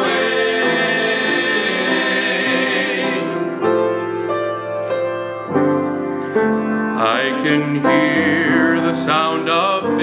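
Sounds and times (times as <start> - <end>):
gospel choir singing: 0.0 - 3.8, 7.0 - 10.0
piano: 0.0 - 10.0.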